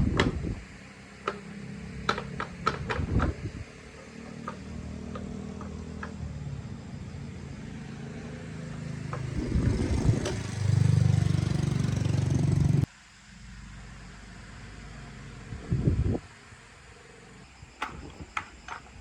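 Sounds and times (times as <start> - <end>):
motorbike engine revving: 1.3 - 12.9.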